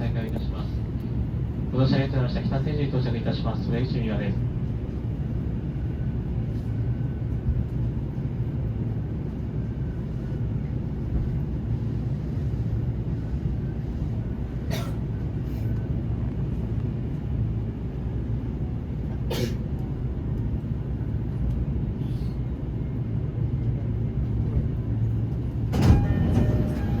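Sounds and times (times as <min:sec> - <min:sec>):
train rumble: 0:00.0 - 0:27.0
train brake noise: 0:25.7 - 0:27.0.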